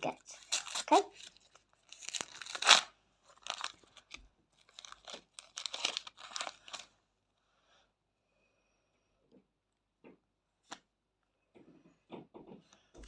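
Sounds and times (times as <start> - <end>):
wrapper tearing and crinkling: 0.1 - 6.9.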